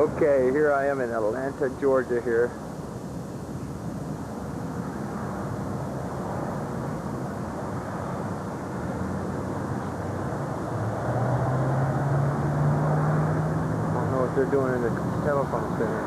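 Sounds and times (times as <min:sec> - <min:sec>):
droning hum: 0:00.0 - 0:16.0
low engine rumble: 0:03.8 - 0:16.0.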